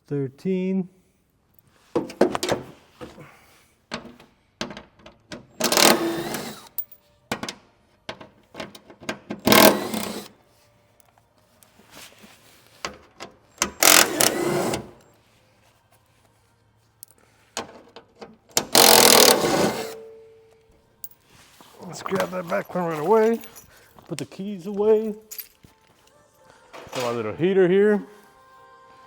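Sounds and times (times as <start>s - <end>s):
cordless power tool whine: 18.8s - 20.0s.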